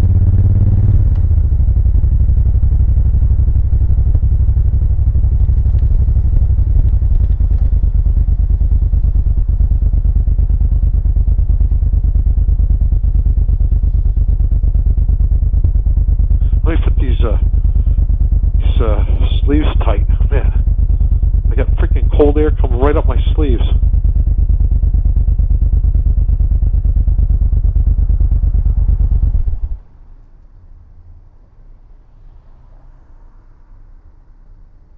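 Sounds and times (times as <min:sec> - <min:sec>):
motorcycle engine running: 0:00.0 - 0:30.0
wind noise: 0:03.3 - 0:16.6.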